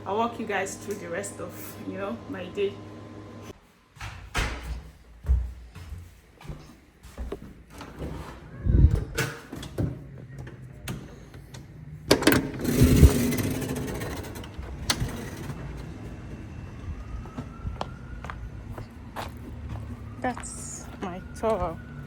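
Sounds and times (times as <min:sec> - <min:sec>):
knocks clicks and rustles: 0:07.3 - 0:16.3.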